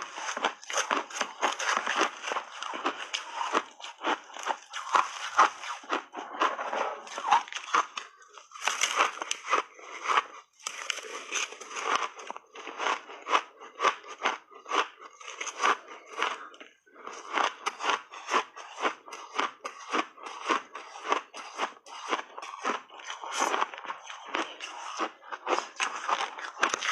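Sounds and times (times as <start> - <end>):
chewing crunchy shaved ice: 0.0 - 26.9.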